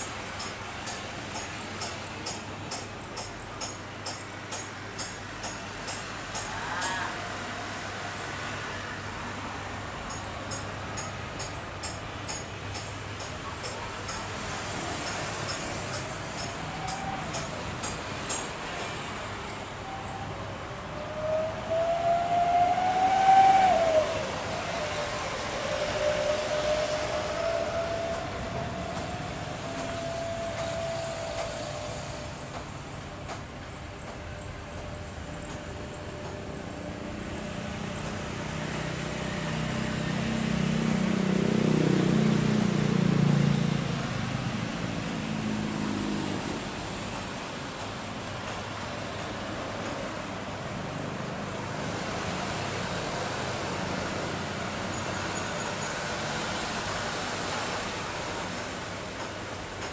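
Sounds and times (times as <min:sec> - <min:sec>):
jet airliner engines rumbling: 0:19.1 - 0:42.1.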